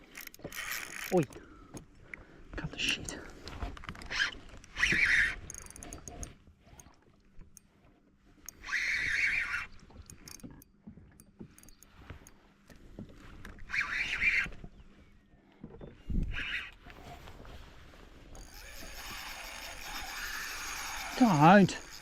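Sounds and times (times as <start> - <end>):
fishing reel drag buzzing: 0.0 - 1.4, 4.0 - 6.9, 8.5 - 10.5, 13.7 - 14.5, 18.3 - 22.0.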